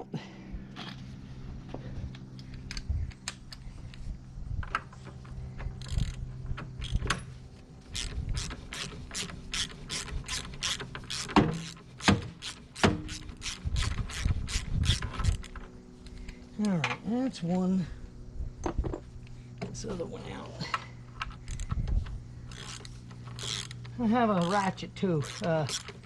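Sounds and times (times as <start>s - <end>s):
hand ratchet clicking: 5.7s - 7.2s, 7.9s - 16.4s, 21.2s - 26.0s.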